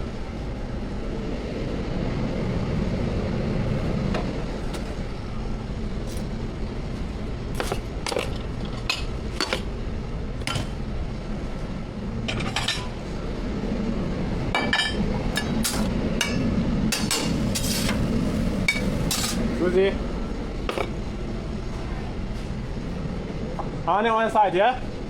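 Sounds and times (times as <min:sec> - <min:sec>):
low rumble of background noise: 0:00.0 - 0:25.0
metal utensils clattering on pans: 0:07.6 - 0:09.7, 0:10.4 - 0:10.8, 0:12.3 - 0:13.0, 0:14.6 - 0:18.0, 0:18.7 - 0:19.5.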